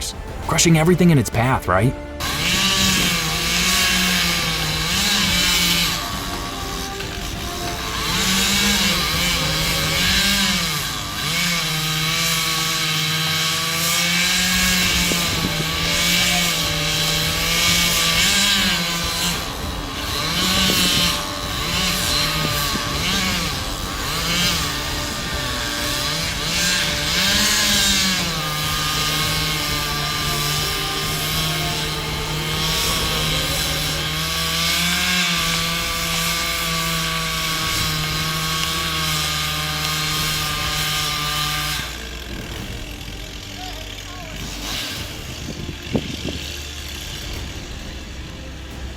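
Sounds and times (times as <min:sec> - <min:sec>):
chainsaw engine revving: 0:00.0 - 0:48.9.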